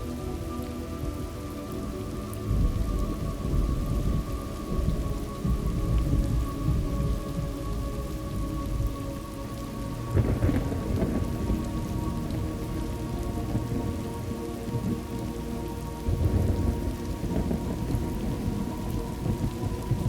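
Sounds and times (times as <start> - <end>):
steady rain falling: 0.0 - 20.0
low rolling thunder: 2.5 - 9.0, 10.1 - 15.3, 15.9 - 20.0.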